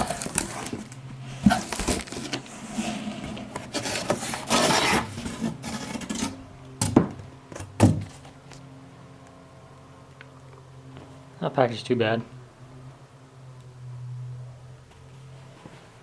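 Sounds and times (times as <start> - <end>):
packaging rustling and scraping: 0.0 - 6.5.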